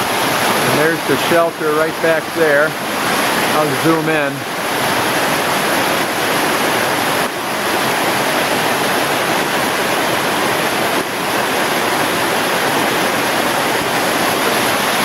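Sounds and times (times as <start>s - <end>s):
rushing mountain stream: 0.0s - 15.0s.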